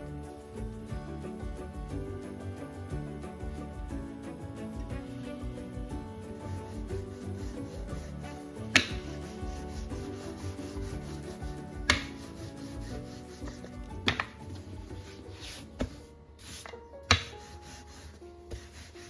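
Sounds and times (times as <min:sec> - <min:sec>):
soft background music: 0:00.0 - 0:19.0
dough rubbing and scraping: 0:05.7 - 0:19.0.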